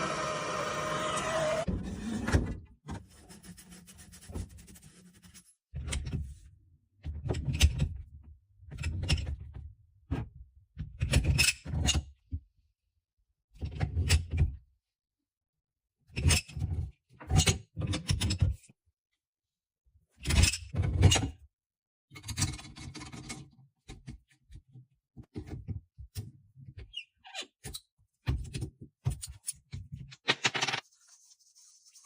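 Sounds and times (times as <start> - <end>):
rubbing and scraping: 30.8 - 32.0.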